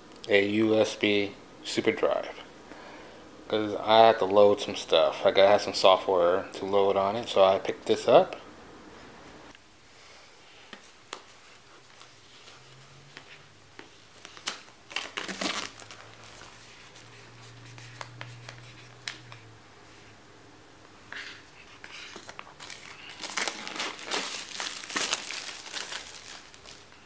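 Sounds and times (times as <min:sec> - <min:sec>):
packaging crinkling: 0:14.0 - 0:17.0, 0:22.0 - 0:27.0.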